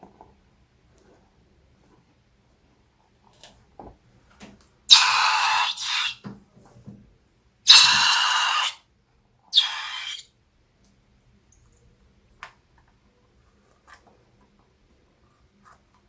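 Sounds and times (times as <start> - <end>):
air hissing from balloon neck: 4.9 - 6.2, 7.7 - 8.8, 9.6 - 10.2.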